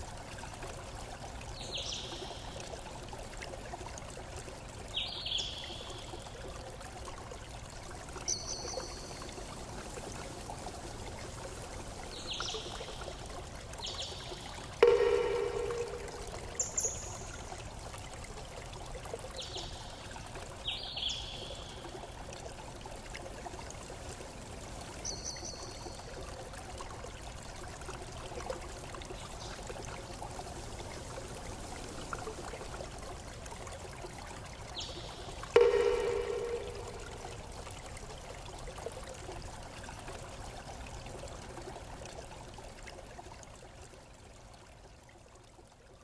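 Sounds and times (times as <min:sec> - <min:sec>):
stream trickling: 0:00.0 - 0:46.0
high bird chirps: 0:14.8 - 0:17.2
low ringing note: 0:14.8 - 0:17.2, 0:35.6 - 0:37.5.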